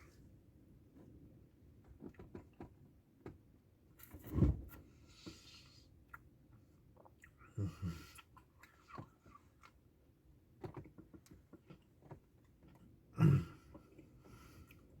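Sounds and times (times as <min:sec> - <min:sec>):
person chewing ice cream: 0:06.9 - 0:09.9.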